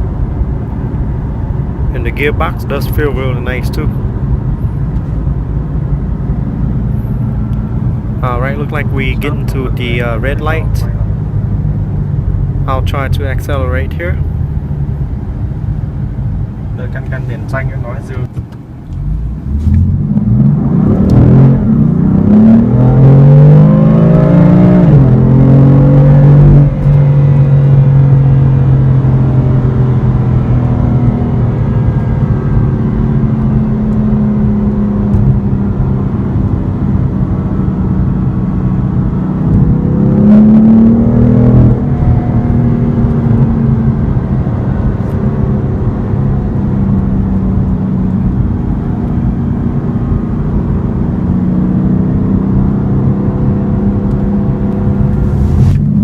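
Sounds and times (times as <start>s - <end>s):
car engine running: 0.0s - 56.0s
road rumble: 0.0s - 56.0s.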